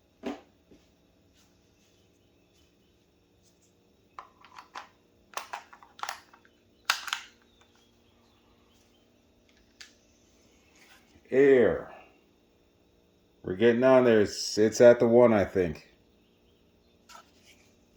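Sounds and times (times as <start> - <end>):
magazine clicks and knocks: 4.2 - 7.9.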